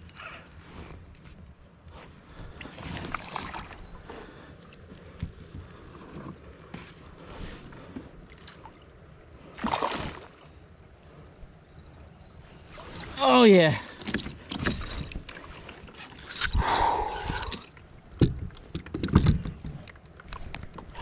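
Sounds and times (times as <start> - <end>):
water splashing: 2.8 - 3.8.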